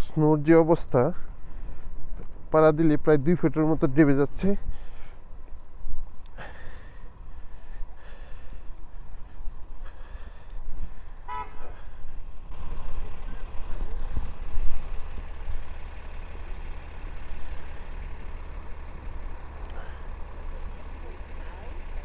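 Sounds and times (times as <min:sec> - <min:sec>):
low rumble of vehicles: 0:00.0 - 0:22.0
car horn toot: 0:11.2 - 0:11.8.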